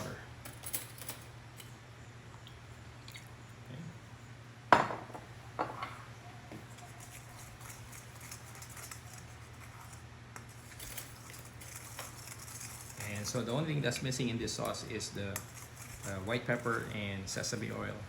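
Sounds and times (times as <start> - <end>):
utensil clinking against a bowl: 7.0 - 17.0.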